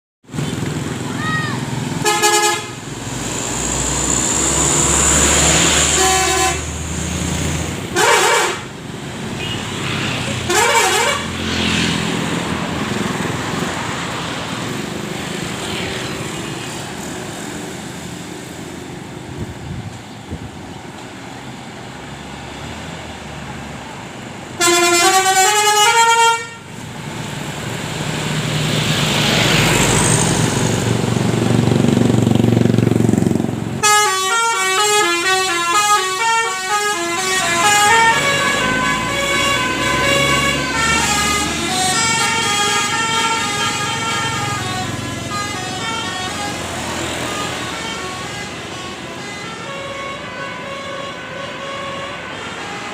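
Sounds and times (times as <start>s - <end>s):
bus engine: 0.2s - 52.9s
road noise: 0.2s - 52.9s
multi-tone bus horn melody: 2.0s - 12.1s, 24.5s - 26.9s, 33.7s - 52.9s.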